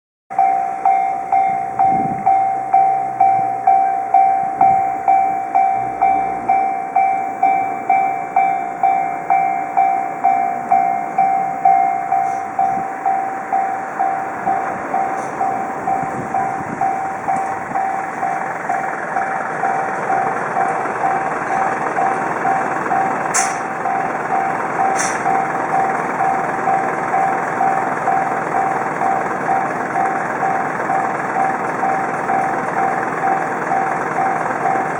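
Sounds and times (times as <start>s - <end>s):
level crossing electronic bell: 0.3s - 34.9s
train passing: 0.4s - 34.9s.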